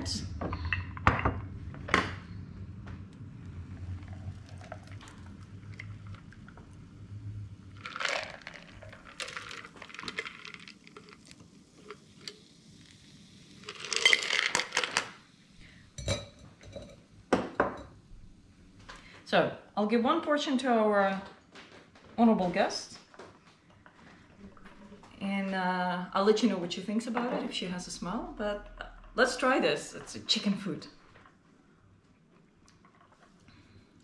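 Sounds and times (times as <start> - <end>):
drink pouring over ice: 3.8 - 6.8, 7.6 - 15.2
ice clinking in cocktail shaker: 7.8 - 11.3, 13.6 - 15.1.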